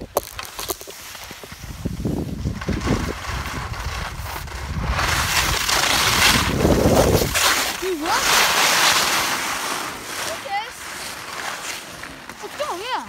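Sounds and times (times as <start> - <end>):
wind buffeting microphone: 1.4 - 9.3.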